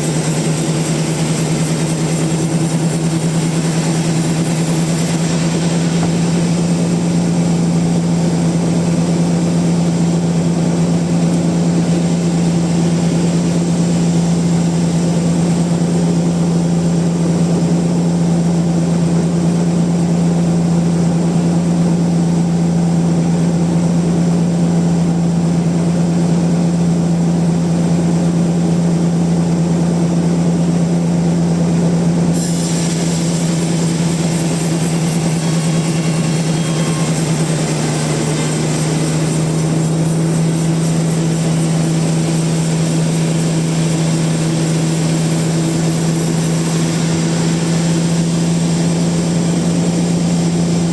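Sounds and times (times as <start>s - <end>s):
bright hissy sound: 0.0s - 8.5s, 32.4s - 50.8s
sawmill machinery humming: 0.0s - 26.7s, 27.5s - 50.9s.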